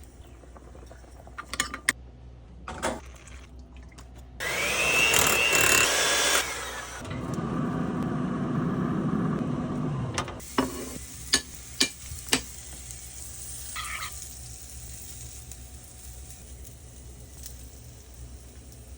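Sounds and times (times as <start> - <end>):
kitchen appliance motor whirring: 4.4 - 10.2
soft sizzle: 10.4 - 18.9.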